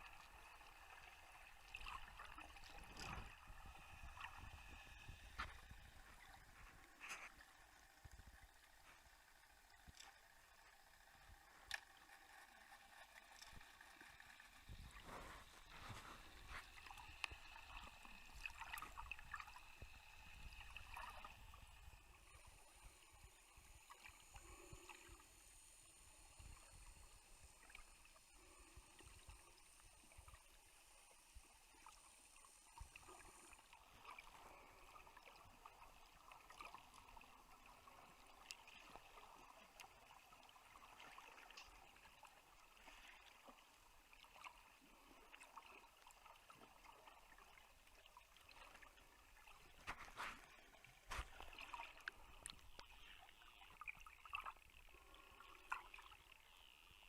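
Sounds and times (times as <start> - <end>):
underwater water hiss: 2.1 - 7.4, 14.9 - 36.5.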